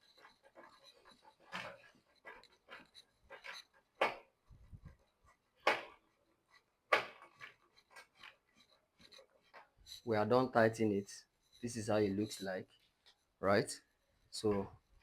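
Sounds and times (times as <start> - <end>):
screwdriver scraping strokes: 0.0 - 4.0, 6.0 - 10.1.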